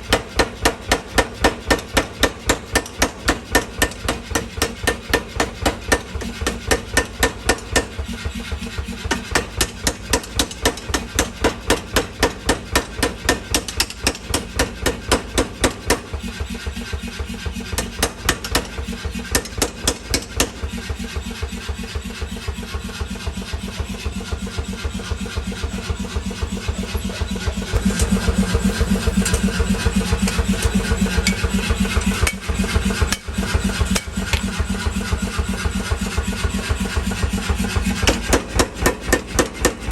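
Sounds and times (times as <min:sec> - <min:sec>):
motor hum: 0:19.3 - 0:39.9
power hammer blows on steel: 0:27.7 - 0:39.9.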